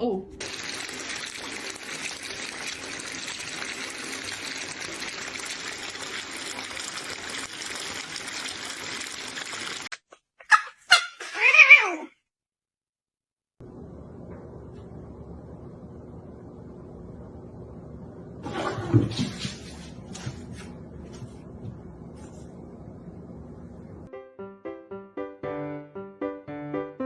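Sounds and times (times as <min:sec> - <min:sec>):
running water: 0:00.4 - 0:10.0, 0:18.4 - 0:21.4
cat meowing: 0:11.1 - 0:12.2.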